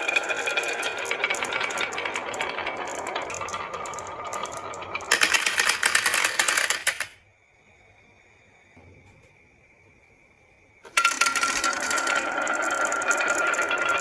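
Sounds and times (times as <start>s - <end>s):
marbles clattering down wooden run: 0.0s - 7.2s, 10.9s - 14.0s.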